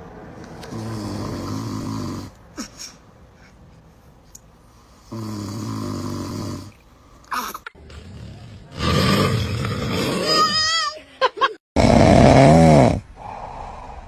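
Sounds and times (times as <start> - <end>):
man snoring: 0.7 - 2.4, 5.0 - 6.8, 8.1 - 10.5, 11.8 - 14.0.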